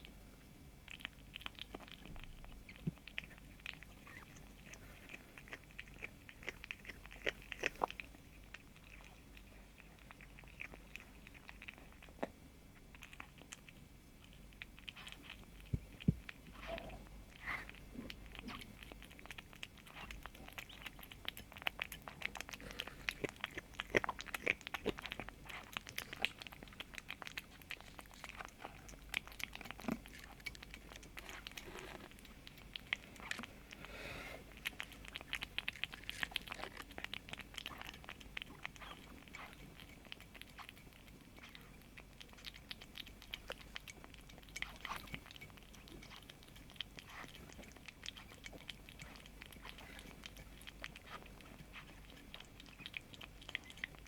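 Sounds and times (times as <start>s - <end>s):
kitten crunching food: 0.0s - 54.0s.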